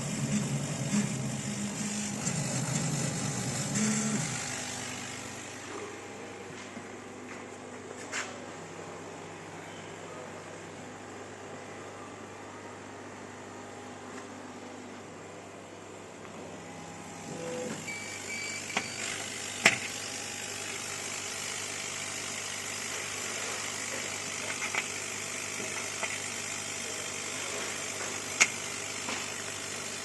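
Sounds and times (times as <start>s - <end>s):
machine hum: 0.0s - 30.0s
electronic beeps: 17.3s - 19.2s.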